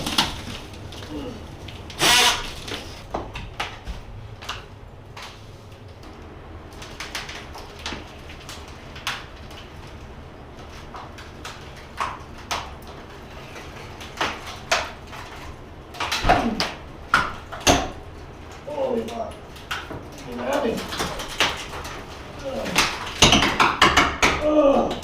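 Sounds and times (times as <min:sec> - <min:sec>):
demolition knocks and scrapes: 0:00.0 - 0:01.9, 0:19.4 - 0:25.0.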